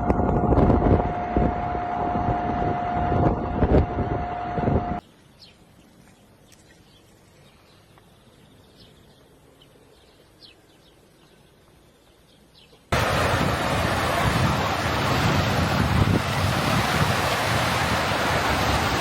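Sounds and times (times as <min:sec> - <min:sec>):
wind rushing on microphone: 0:00.0 - 0:05.0, 0:12.9 - 0:19.0.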